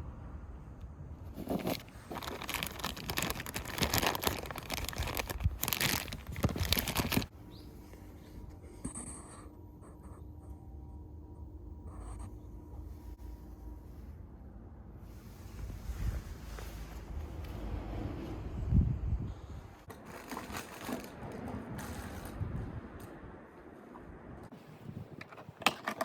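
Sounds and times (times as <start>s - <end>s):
faint steady hum: 0.0s - 17.7s.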